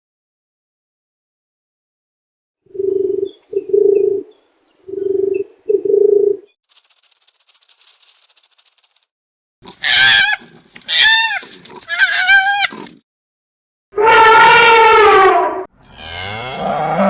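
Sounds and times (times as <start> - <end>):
dry high rattling hiss: 6.6 - 9.1.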